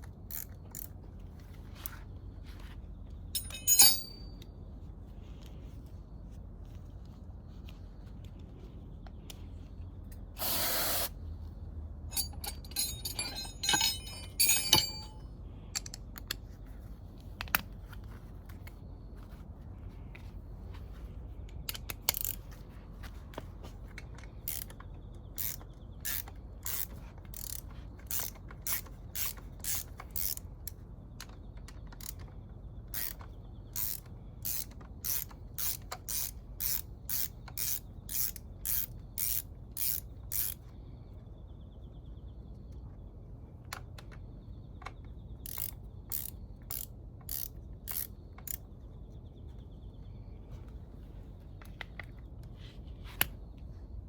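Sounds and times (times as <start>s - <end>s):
ratchet wrench clicking: 0.3s - 0.9s, 12.1s - 15.2s, 21.7s - 22.4s, 24.4s - 24.8s, 25.4s - 30.5s, 32.9s - 33.2s, 33.8s - 40.6s, 45.4s - 48.6s
metal clinks: 3.3s - 4.4s, 12.1s - 16.0s
short hiss: 10.4s - 11.1s.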